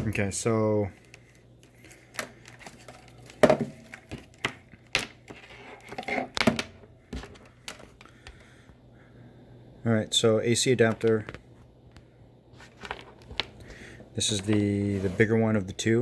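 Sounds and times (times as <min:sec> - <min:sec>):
cords and adapters being handled: 0:00.0 - 0:08.8, 0:10.8 - 0:14.8.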